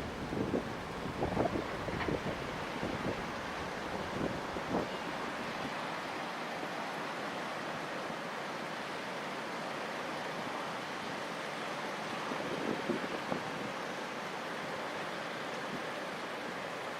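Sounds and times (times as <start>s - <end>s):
wind buffeting microphone: 0.0s - 5.0s
wind and sea rushing: 0.0s - 16.9s.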